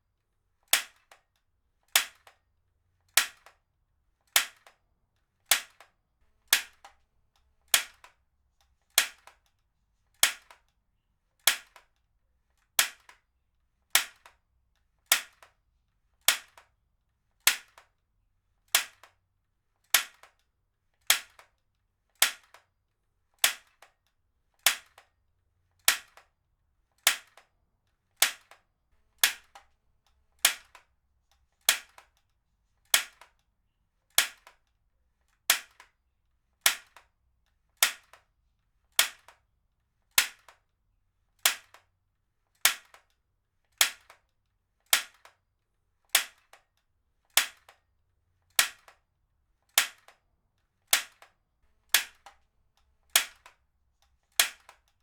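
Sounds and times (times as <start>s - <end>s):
stapler firing sharp snap: 47.4s - 47.8s, 51.9s - 52.3s, 53.2s - 53.6s.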